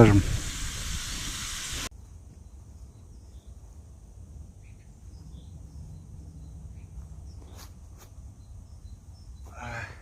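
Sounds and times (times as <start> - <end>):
faint steady high hiss: 0.0 - 5.3
faint bird chirps: 4.6 - 10.0.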